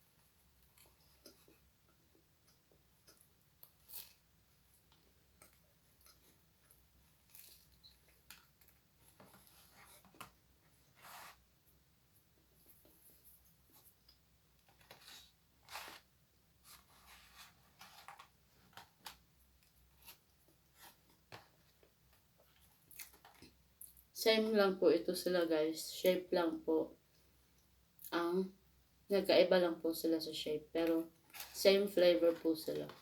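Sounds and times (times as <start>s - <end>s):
eating and food handling: 0.0s - 24.1s.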